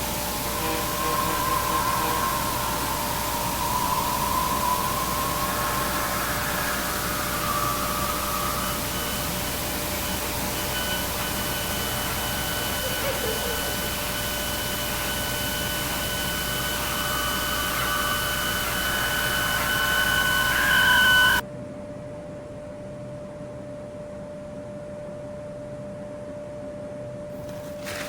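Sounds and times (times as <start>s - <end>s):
high whining tones: 0.0s - 21.4s
loud static hiss: 0.0s - 21.4s
steady electronic hum tone: 0.0s - 21.4s.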